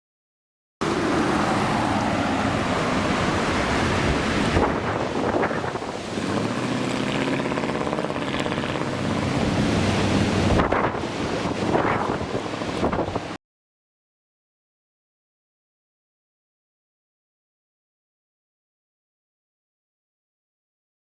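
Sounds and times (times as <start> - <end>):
storm wind on microphone: 0.8 - 13.4.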